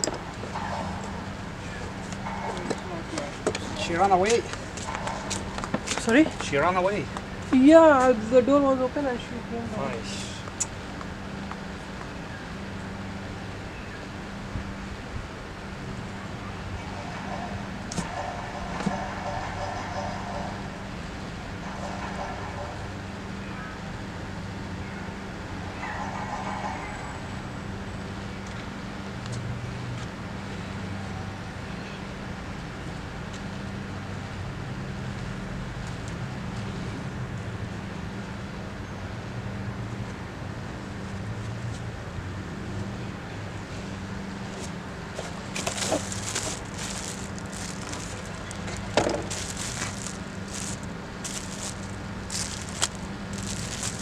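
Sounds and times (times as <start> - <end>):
low mechanical hum: 0.0 - 54.0
crackling and rustling: 44.5 - 54.0.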